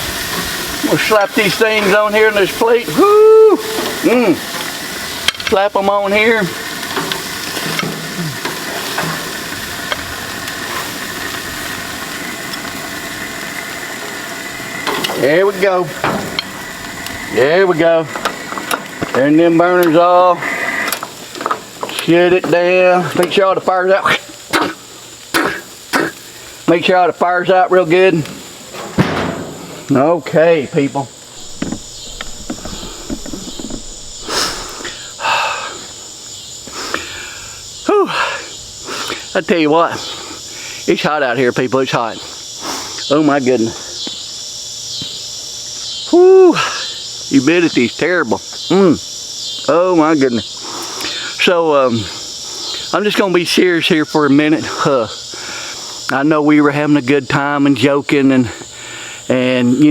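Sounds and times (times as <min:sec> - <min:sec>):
gas grill burners hissing: 0:00.0 - 0:59.9
insect chorus: 0:00.0 - 0:59.9
short rushes of noise: 0:31.4 - 0:35.2.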